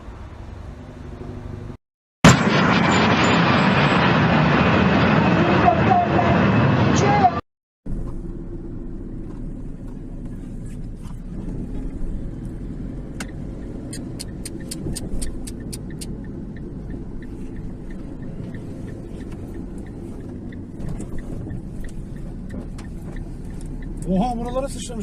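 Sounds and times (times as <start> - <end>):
car rumbling on the move: 0.0 - 1.8, 7.9 - 25.0
sharp clicks: 12.4 - 24.7.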